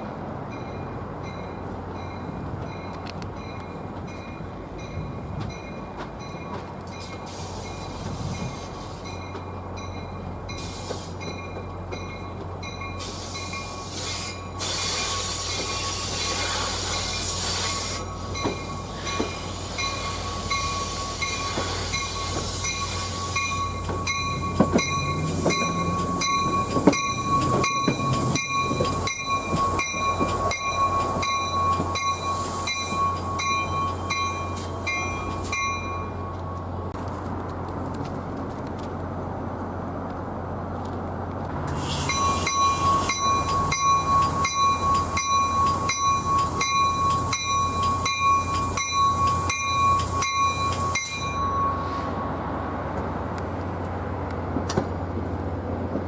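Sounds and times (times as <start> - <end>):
train engine hum: 0.0 - 56.0
wheels clicking over rail joints: 0.6 - 52.1, 52.8 - 56.0
high wheel squeal: 12.9 - 36.3, 41.7 - 52.5.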